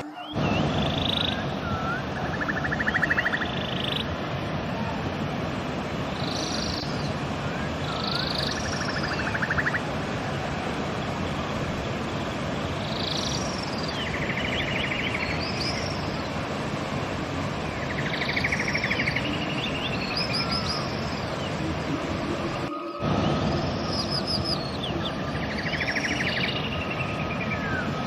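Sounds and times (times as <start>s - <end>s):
songbird singing with buzzy trill: 0.0s - 4.1s, 6.2s - 7.1s, 7.8s - 9.8s, 12.8s - 16.3s, 17.8s - 28.0s
river water rushing: 0.0s - 28.0s.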